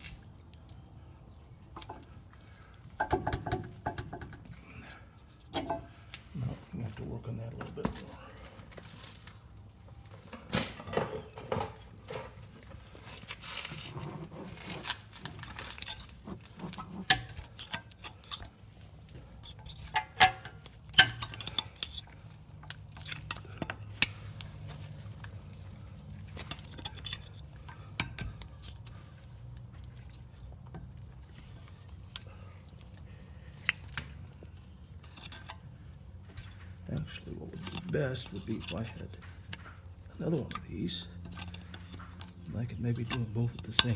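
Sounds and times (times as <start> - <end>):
tools tapping on brake caliper: 1.7 - 6.2, 14.9 - 43.9.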